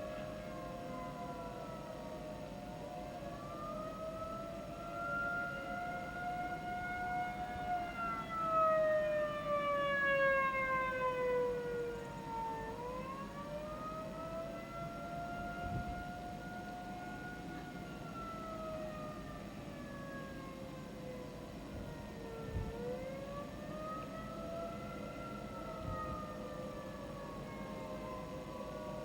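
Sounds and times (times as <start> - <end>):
warning siren sliding in pitch: 0.0 - 29.0
warning siren steady tone: 0.0 - 29.0.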